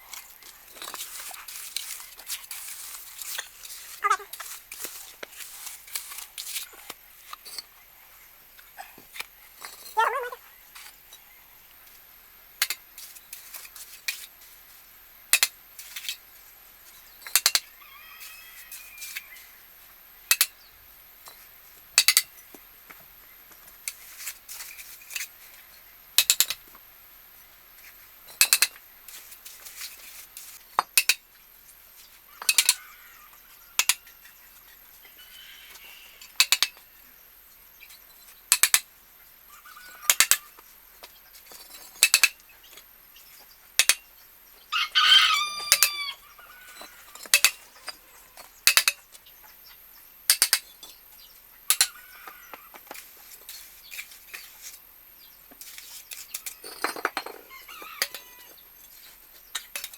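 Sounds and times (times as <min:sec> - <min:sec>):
rooster crowing: 0:17.7 - 0:19.6, 0:32.4 - 0:33.4, 0:35.2 - 0:36.3, 0:44.7 - 0:47.2, 0:57.4 - 0:58.6.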